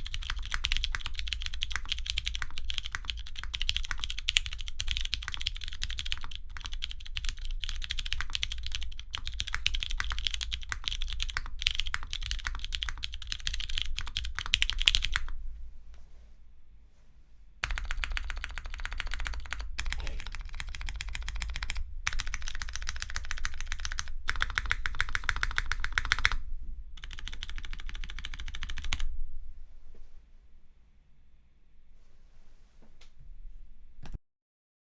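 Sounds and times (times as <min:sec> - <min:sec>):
mechanical keyboard typing: 0:00.0 - 0:15.3, 0:17.6 - 0:26.4, 0:27.0 - 0:29.1.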